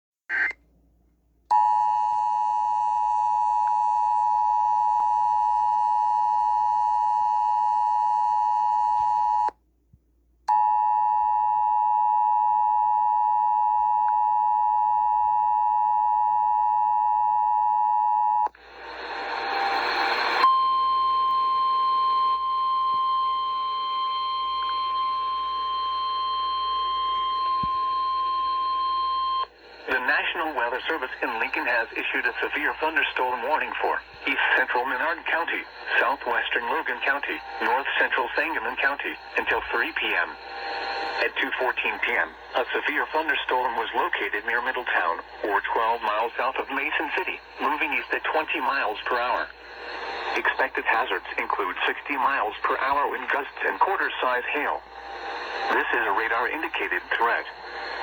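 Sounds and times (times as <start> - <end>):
steady alarm tone: 10.6 - 58.0
radio static: 18.8 - 20.4, 29.6 - 58.0.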